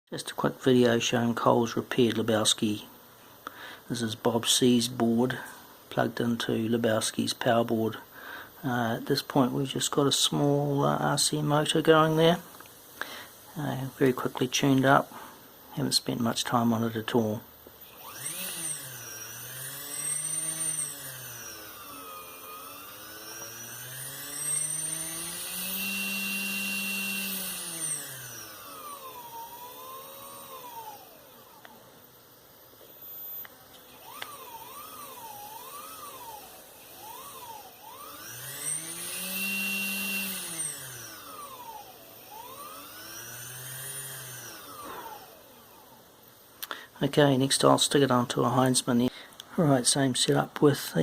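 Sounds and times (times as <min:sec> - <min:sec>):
electric motor whine: 0:17.2 - 0:46.5.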